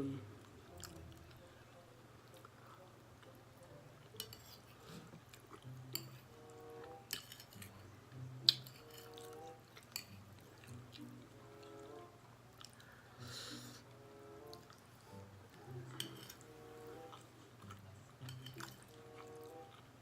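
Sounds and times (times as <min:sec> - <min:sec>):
quiet chewing: 0:00.4 - 0:20.0
fork clicking against dish: 0:07.1 - 0:07.7, 0:08.4 - 0:09.1, 0:16.0 - 0:16.4.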